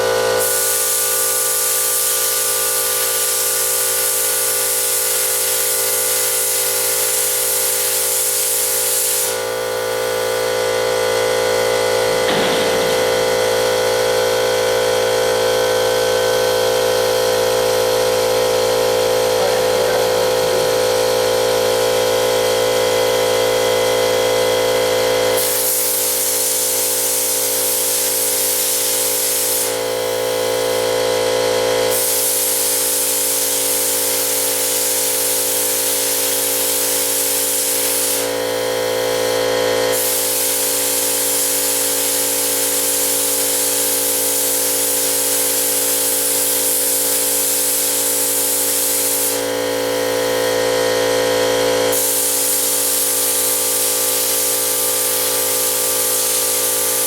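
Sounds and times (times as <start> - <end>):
plasma cutter arc hissing: 0.4 - 10.7, 12.1 - 14.8, 25.3 - 31.2, 31.8 - 51.1, 51.8 - 57.0
machine hum: 11.8 - 14.9.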